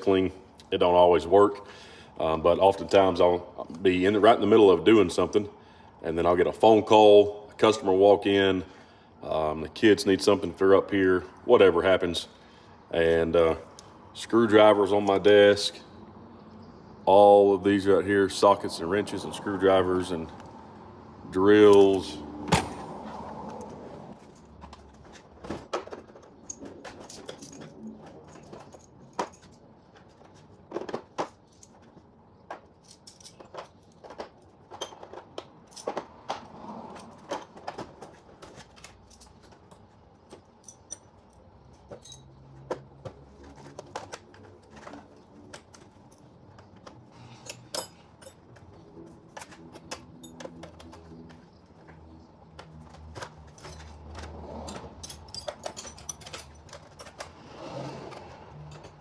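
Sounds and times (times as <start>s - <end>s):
metal hand tools clattering: 53.0s - 59.0s.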